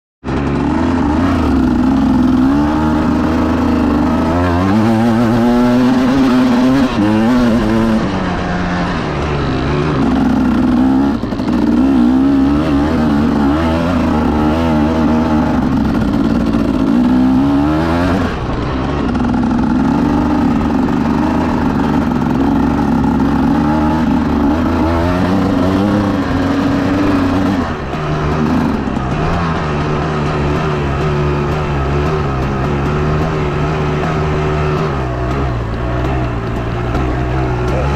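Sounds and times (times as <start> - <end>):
vehicle engine accelerating: 0.2 - 37.9.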